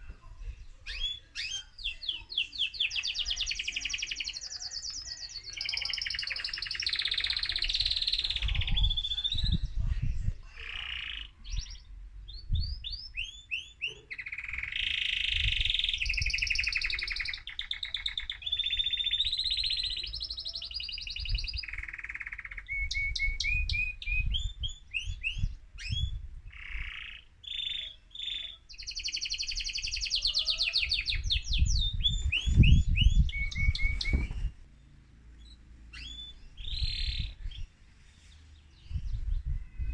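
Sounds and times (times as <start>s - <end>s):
canary singing trills: 0.4s - 39.9s
dull low thumps: 11.6s - 13.0s, 31.2s - 34.7s.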